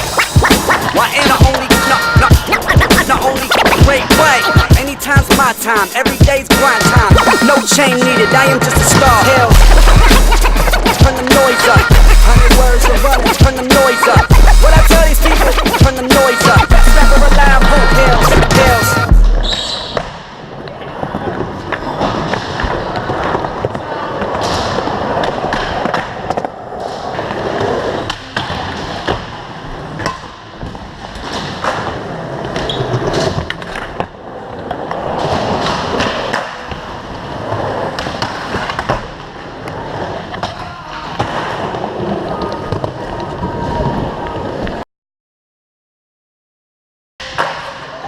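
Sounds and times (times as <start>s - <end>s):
skateboard wheels rolling: 19.5s - 44.8s.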